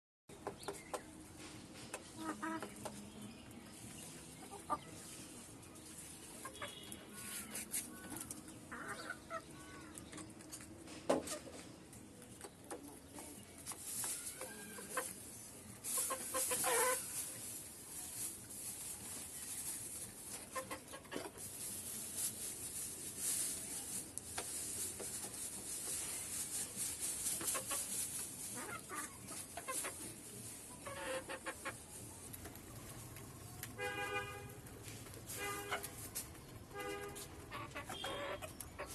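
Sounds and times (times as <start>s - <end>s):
chickens clucking: 0.3s - 38.9s
rustling or scratching: 3.6s - 8.5s, 13.6s - 38.9s.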